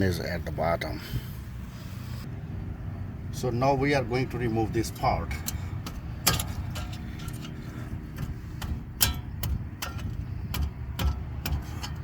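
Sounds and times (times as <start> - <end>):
low steady rumble: 0.2 - 12.0
hand tools clicking and knocking metal: 4.9 - 12.0.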